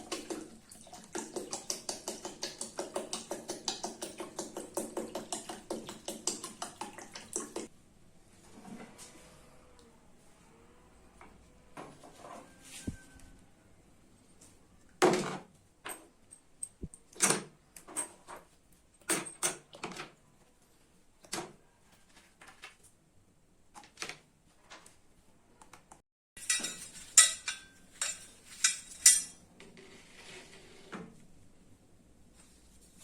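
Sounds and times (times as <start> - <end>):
metal tools clinking and knocking: 26.4 - 29.5.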